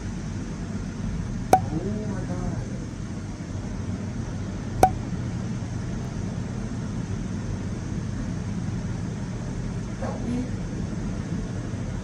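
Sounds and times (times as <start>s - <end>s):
sharp click: 1.6s - 1.8s.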